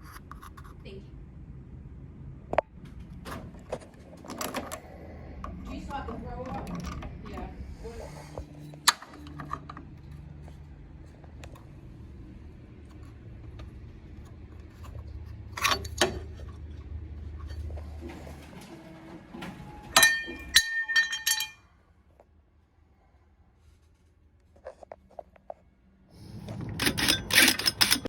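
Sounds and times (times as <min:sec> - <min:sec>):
steady low hum: 0:00.0 - 0:19.2
metal hardware clinking and jangling: 0:15.5 - 0:16.5, 0:20.0 - 0:21.7, 0:26.8 - 0:28.0.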